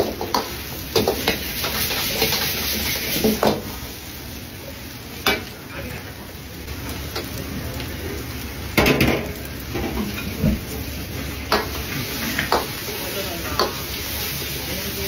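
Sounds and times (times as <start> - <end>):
metal utensils clattering on pan: 0.0 - 3.6, 8.8 - 10.6, 11.5 - 12.7, 13.3 - 13.9
food frying with steady sizzle: 0.0 - 15.0.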